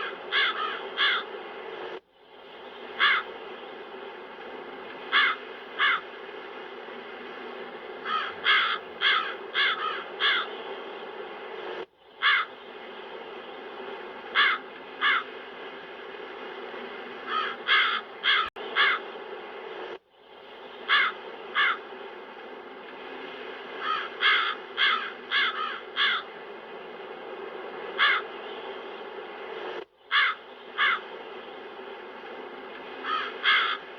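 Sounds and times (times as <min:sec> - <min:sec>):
crows cawing: 0:00.0 - 0:01.3, 0:03.0 - 0:03.3, 0:05.1 - 0:06.1, 0:08.0 - 0:10.6, 0:12.2 - 0:12.6, 0:14.3 - 0:15.3, 0:17.3 - 0:19.1, 0:20.9 - 0:21.8, 0:23.8 - 0:26.3, 0:28.0 - 0:28.3, 0:30.1 - 0:31.1, 0:33.0 - 0:33.9.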